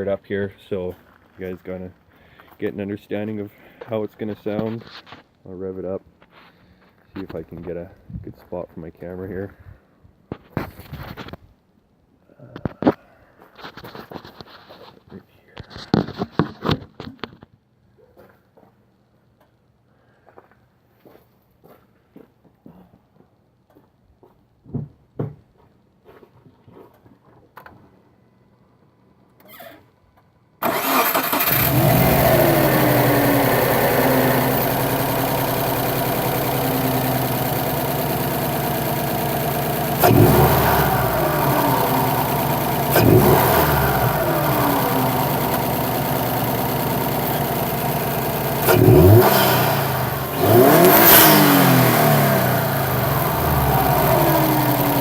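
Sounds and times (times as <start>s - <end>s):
car engine starting and revving: 30.6s - 55.0s.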